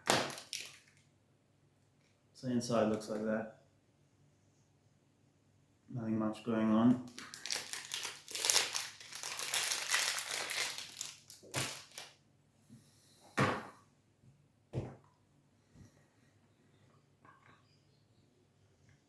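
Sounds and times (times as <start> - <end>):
plastic wrapper crinkling: 0.0 - 1.0, 7.0 - 12.2.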